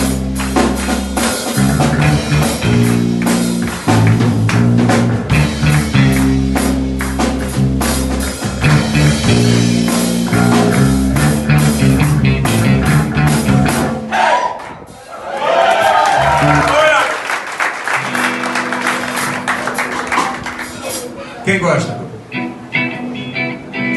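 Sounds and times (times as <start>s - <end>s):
drum hits: 0.0s - 14.9s
band playing instrumental rock: 0.0s - 15.0s, 15.7s - 23.9s
held bass notes: 0.0s - 15.1s, 16.0s - 17.0s.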